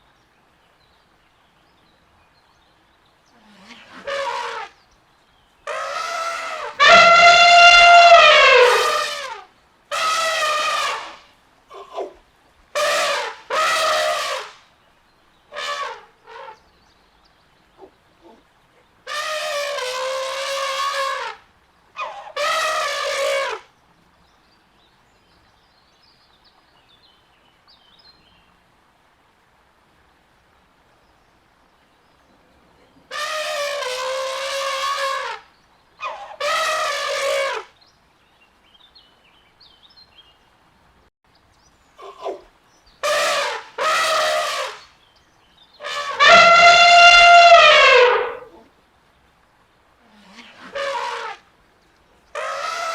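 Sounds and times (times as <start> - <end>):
elephant trumpeting: 3.5 - 4.8, 5.7 - 12.1, 12.8 - 14.6, 15.5 - 16.6, 19.1 - 21.4, 22.0 - 23.6, 33.1 - 35.4, 36.0 - 37.7, 43.0 - 44.9, 45.8 - 48.6, 50.2 - 51.4, 52.4 - 52.9.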